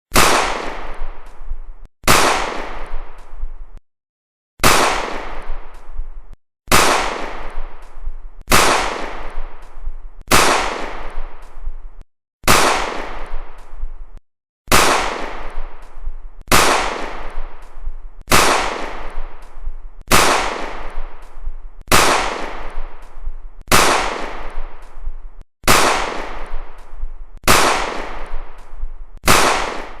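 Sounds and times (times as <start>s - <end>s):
gunshots with echo: 0.1s - 1.1s, 2.0s - 3.0s, 4.6s - 5.6s, 6.7s - 7.7s, 8.5s - 9.5s, 10.3s - 11.3s, 12.4s - 13.4s, 14.7s - 15.7s, 16.5s - 17.5s, 18.3s - 19.3s, 20.1s - 21.1s, 21.9s - 22.9s, 23.7s - 24.6s, 25.6s - 26.6s, 27.4s - 28.4s, 29.2s - 30.0s.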